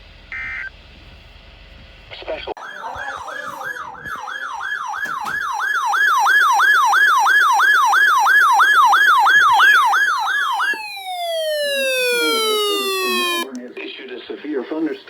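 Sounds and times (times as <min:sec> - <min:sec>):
siren yelping: 0:00.4 - 0:00.7, 0:02.6 - 0:13.6.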